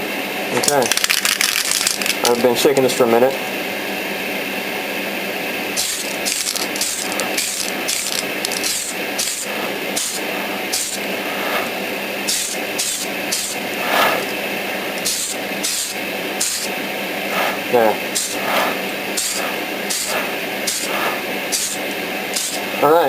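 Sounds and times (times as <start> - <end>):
aerosol can spraying: 5.8 - 11.6, 12.3 - 14.2, 15.0 - 16.7, 18.1 - 22.7.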